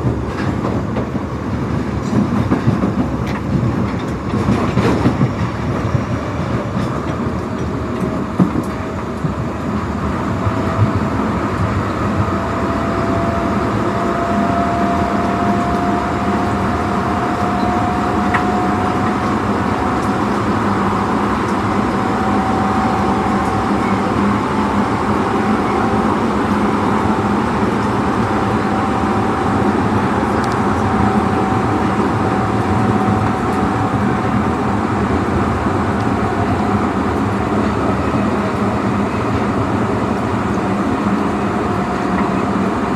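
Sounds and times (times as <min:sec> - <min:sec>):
clacks over rail joints: 0:00.0 - 0:09.4
wheels rumbling on rails: 0:00.0 - 0:42.9
high-pitched train motor whine: 0:04.8 - 0:42.9.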